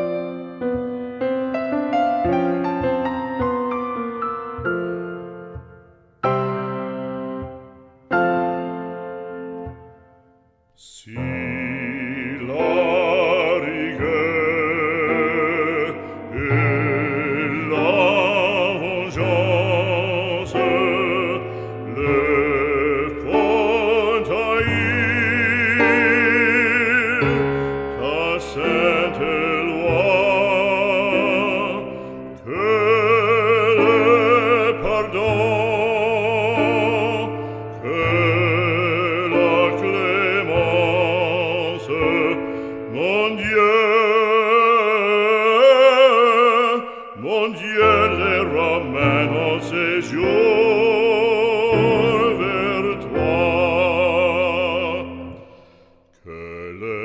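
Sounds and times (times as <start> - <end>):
operatic voice singing: 10.8 - 57.0.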